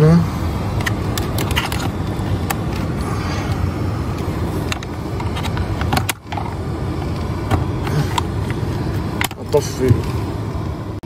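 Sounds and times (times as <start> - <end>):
car electric fan whirring: 0.0 - 11.0
plastic parts clicking: 0.8 - 2.6.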